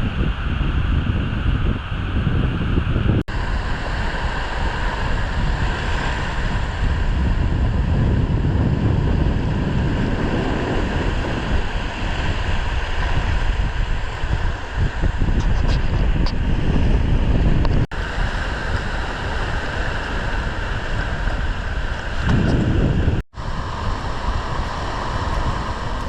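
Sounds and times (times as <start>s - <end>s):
wind buffeting microphone: 0.0s - 26.0s
sea surf: 3.3s - 26.0s.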